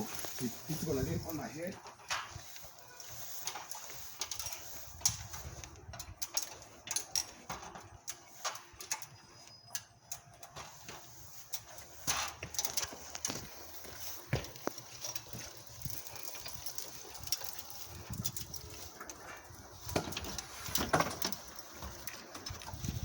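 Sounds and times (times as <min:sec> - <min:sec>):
footsteps: 0:00.0 - 0:08.8, 0:10.5 - 0:23.0
light knocks and clatter: 0:10.5 - 0:23.0.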